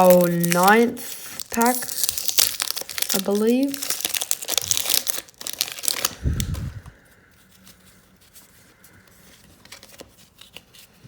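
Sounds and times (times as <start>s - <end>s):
wrapper tearing and crinkling: 0.0s - 6.8s
handling of cards: 0.0s - 11.0s.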